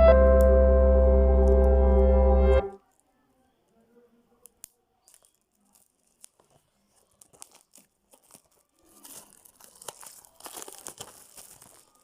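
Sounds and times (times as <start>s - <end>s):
packaging tearing and crinkling: 5.0s - 12.0s.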